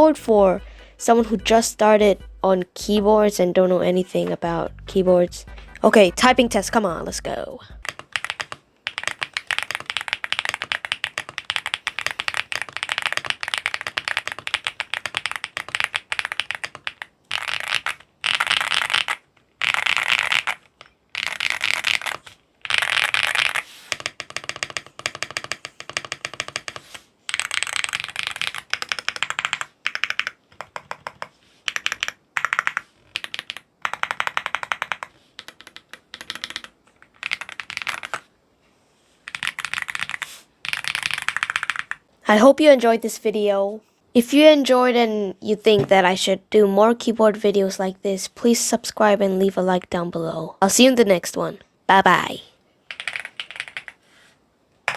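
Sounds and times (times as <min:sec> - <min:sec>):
fast typing on mechanical keyboard: 0:07.3 - 0:38.3, 0:39.2 - 0:42.1, 0:52.8 - 0:54.0.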